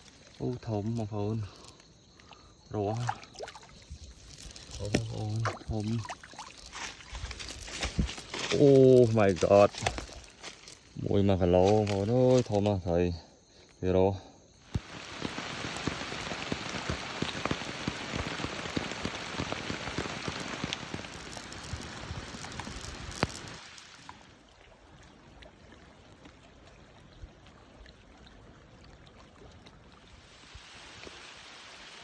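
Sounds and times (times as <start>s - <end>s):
rain drops hitting a surface: 3.8s - 10.9s, 11.6s - 12.6s, 14.7s - 24.3s.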